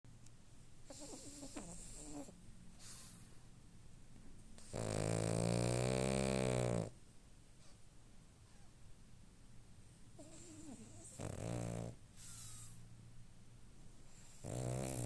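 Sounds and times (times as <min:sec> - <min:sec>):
quiet breathing: 0:00.8 - 0:03.6, 0:12.1 - 0:13.1
deep snore: 0:04.6 - 0:07.0, 0:10.2 - 0:12.7, 0:14.1 - 0:15.0.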